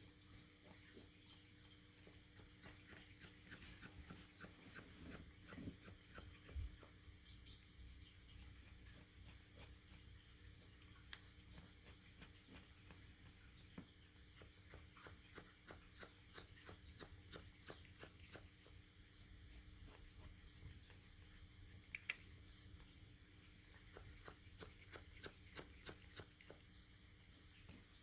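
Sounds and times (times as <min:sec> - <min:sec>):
cat chewing and licking food: 0:00.0 - 0:28.0
small clicks of feeder bowl: 0:20.5 - 0:28.0.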